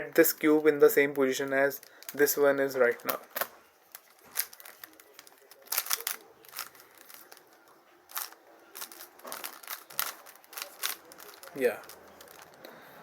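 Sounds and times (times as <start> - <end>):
puzzle cube clicking: 3.0 - 7.4, 8.1 - 12.6.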